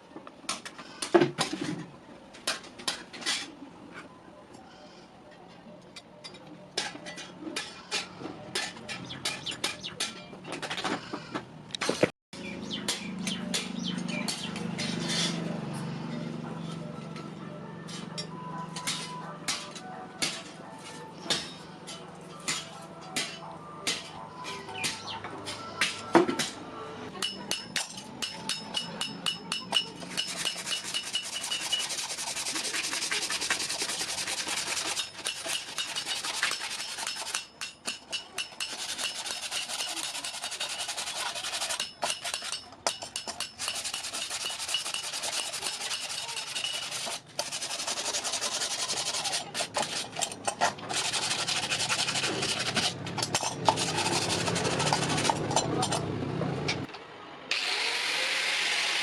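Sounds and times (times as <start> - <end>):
abrasive rasping on metal: 27.2 - 55.9.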